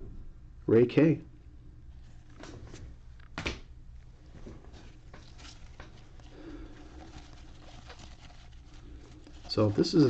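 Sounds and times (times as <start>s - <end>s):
cards and wrapping rustling: 4.3s - 10.0s.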